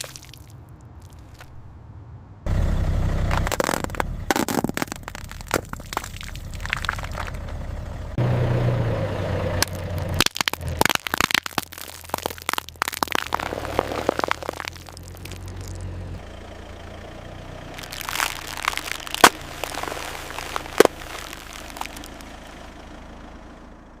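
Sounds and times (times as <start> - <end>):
objects crunching under a tyre: 0.0 - 1.7, 3.2 - 7.7, 9.6 - 16.2, 17.7 - 22.4
car engine hum: 0.0 - 24.0.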